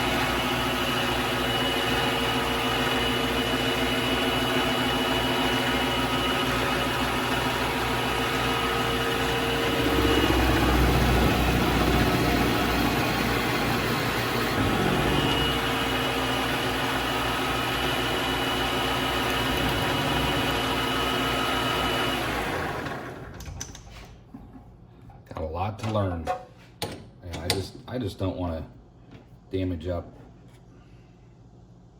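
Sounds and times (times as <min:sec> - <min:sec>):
lathe winding down: 0:00.0 - 0:23.4
lathe motor whine and hum: 0:00.0 - 0:23.5.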